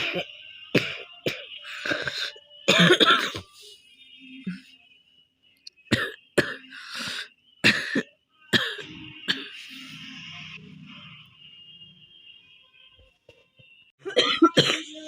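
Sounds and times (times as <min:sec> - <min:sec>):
woman coughing: 0:00.0 - 0:03.6, 0:05.9 - 0:06.8, 0:07.6 - 0:09.6, 0:14.0 - 0:15.0.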